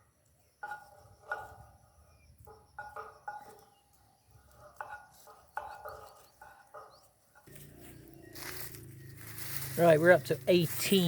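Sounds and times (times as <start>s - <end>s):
metal clinks on hollow steel post: 2.4s - 3.8s, 4.6s - 7.5s.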